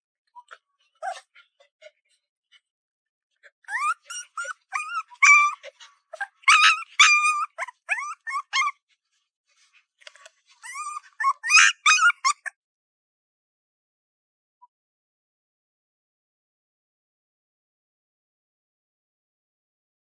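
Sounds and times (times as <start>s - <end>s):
puppy whining and yipping: 0.4s - 1.3s, 3.7s - 8.8s, 10.5s - 12.5s.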